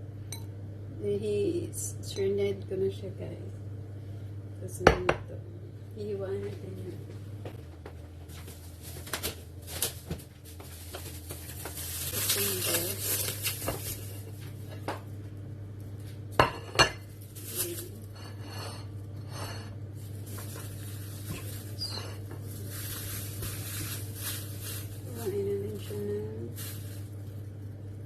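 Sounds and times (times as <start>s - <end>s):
steady low hum: 0.0s - 28.0s
utensils and dishes clattering: 17.6s - 22.4s.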